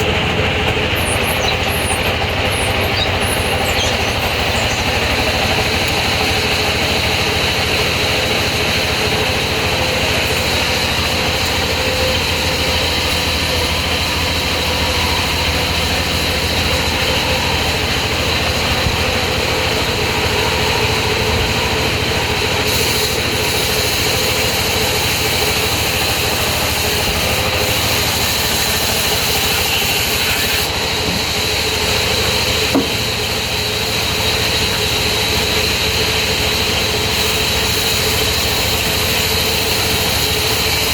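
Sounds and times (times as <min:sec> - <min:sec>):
high saw whine: 0:00.0 - 0:40.9
sawmill machinery droning: 0:00.0 - 0:40.9
short knock: 0:32.7 - 0:33.1.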